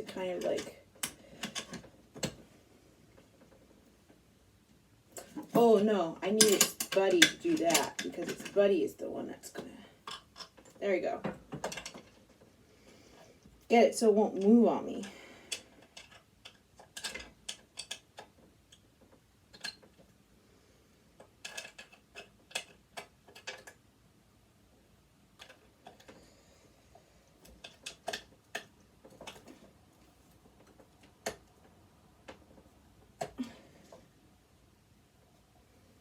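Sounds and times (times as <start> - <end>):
hand tools clicking on screws: 5.2 - 8.6.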